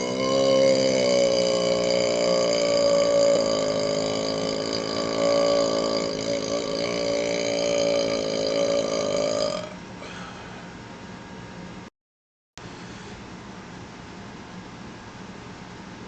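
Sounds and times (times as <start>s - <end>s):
man burping loudly: 0.0s - 10.3s.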